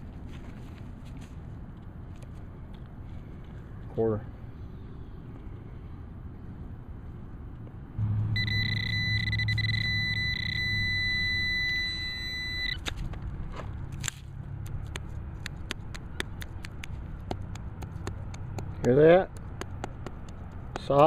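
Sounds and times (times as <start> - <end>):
low hum: 0.7 - 20.8
metal detector target tone: 8.0 - 12.8.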